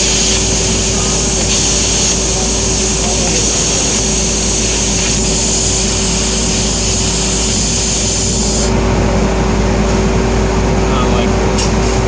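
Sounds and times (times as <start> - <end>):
laser cutter hissing: 0.0 - 8.8
constant hum: 0.0 - 12.0
machine noise: 0.0 - 12.0.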